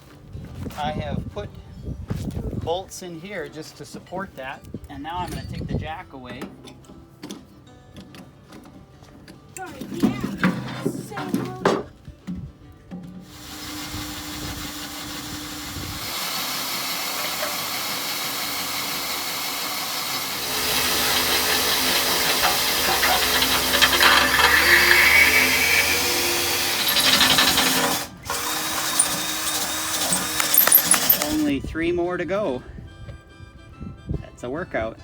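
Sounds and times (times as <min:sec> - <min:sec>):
electric drill boring through steel: 0:13.3 - 0:31.5.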